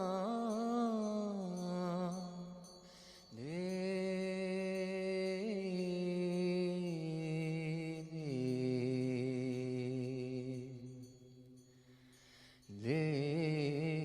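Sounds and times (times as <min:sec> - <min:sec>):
person chanting in long notes: 0:03.4 - 0:11.1.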